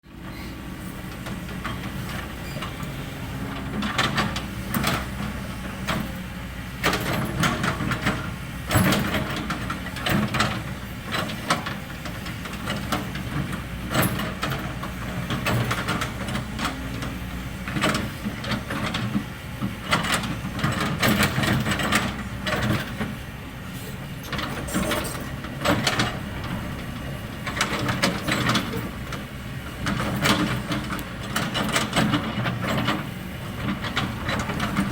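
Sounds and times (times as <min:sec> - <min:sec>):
excavator diesel engine running: 0:00.1 - 0:34.9.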